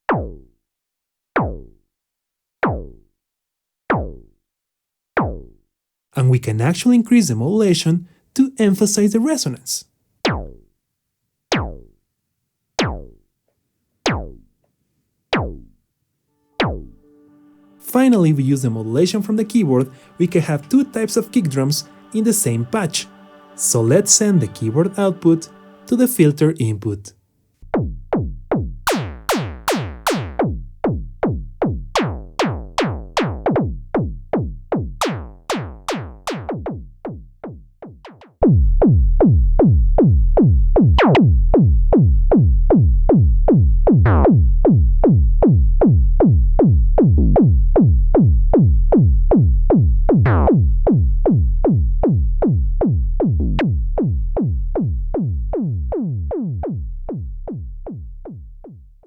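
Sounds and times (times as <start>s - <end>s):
synthetic kick drum pulse: 0.1s - 0.5s, 1.4s - 1.8s, 2.6s - 3.0s, 3.9s - 4.3s, 5.2s - 5.6s, 10.3s - 10.7s, 11.5s - 12.0s, 14.1s - 14.5s, 15.4s - 15.8s, 16.6s - 17.0s, 27.7s - 59.0s.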